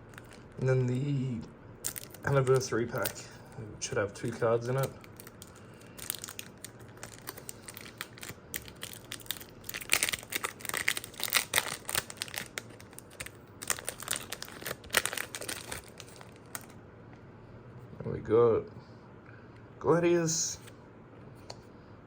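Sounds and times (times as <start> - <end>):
foil wrapper tearing and crinkling: 0.1 - 0.6, 1.8 - 3.2, 4.2 - 16.8.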